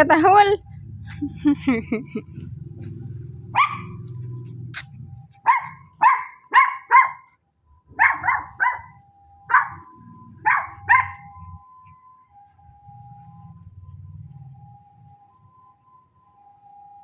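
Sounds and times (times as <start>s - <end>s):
dog barking: 3.5s - 4.1s, 5.4s - 7.3s, 8.0s - 11.3s.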